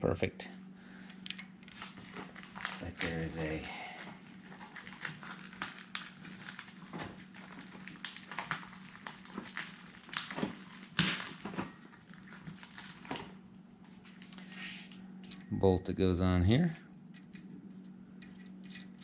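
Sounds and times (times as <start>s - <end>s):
faint hum: 0.0s - 19.0s
packaging rustling: 1.7s - 13.4s
small parts clicking: 18.2s - 19.0s.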